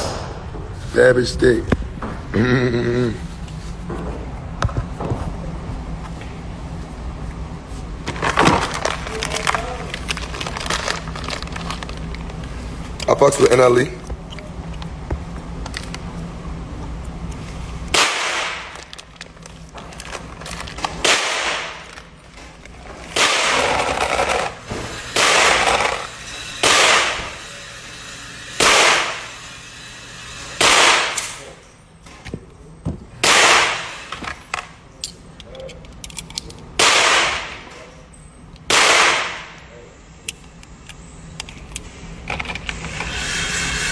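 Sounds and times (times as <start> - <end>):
gunshots with echo: 26.6 - 27.2, 30.6 - 31.3, 33.2 - 34.0, 38.7 - 39.5.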